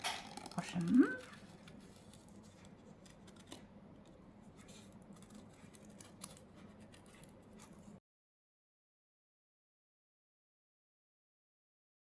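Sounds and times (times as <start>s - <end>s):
small scissors snipping paper: 0.0s - 7.9s.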